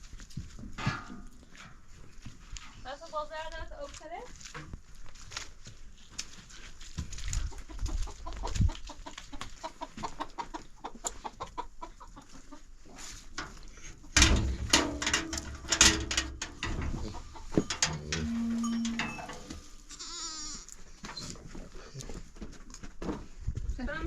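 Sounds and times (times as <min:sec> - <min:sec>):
knocking and clatter: 0:13.4 - 0:19.7
farm animal calls: 0:16.9 - 0:21.4
steady tone: 0:17.6 - 0:19.7.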